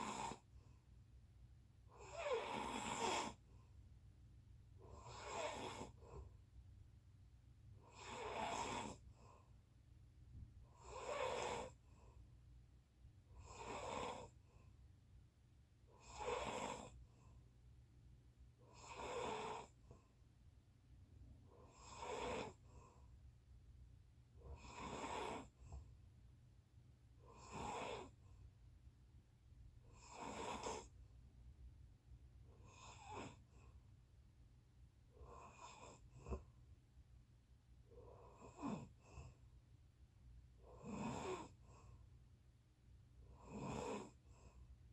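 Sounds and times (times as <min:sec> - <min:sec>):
person snoring: 0:02.0 - 0:03.4, 0:04.9 - 0:05.9, 0:10.8 - 0:11.8.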